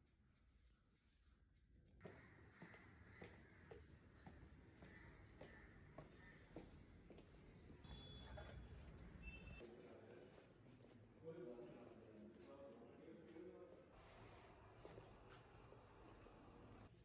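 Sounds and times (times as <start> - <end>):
small birds chirping: 2.0 - 8.3.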